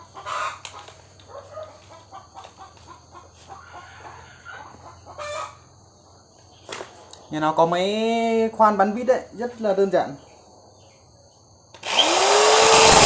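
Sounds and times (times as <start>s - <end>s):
chickens clucking: 0.0s - 7.3s.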